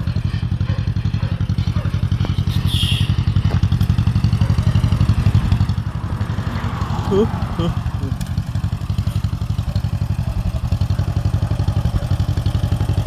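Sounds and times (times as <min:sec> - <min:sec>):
tractor engine pulsing: 0:00.0 - 0:13.0.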